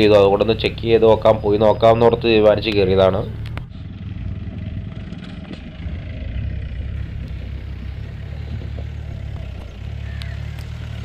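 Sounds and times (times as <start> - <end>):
diesel engine running: 0.0 - 11.0
vehicle clatter: 0.0 - 11.0.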